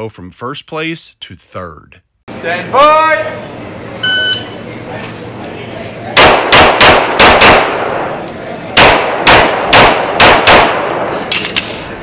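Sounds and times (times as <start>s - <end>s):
pistol shots with echo: 6.2s - 8.0s, 8.8s - 11.1s.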